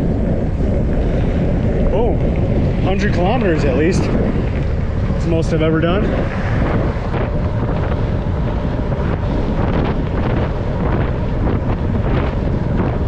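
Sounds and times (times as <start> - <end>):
wind buffeting on microphone: 0.0 - 13.0.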